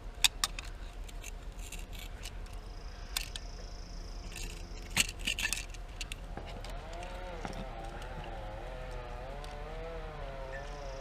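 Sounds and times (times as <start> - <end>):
electrical wires clicking and rattling: 4.2 - 9.9.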